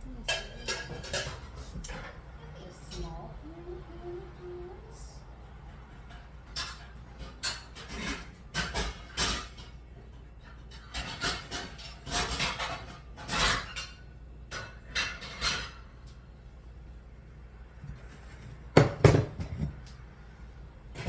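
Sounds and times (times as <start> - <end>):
cookware clanking and knocking: 0.3 - 2.1, 17.9 - 19.9.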